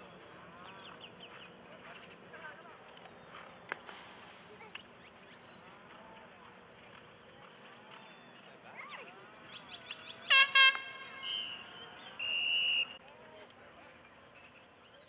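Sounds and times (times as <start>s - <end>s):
faint distant voices: 0.0s - 15.0s
loud horn blasts: 10.2s - 12.9s
high whistle: 12.2s - 13.0s.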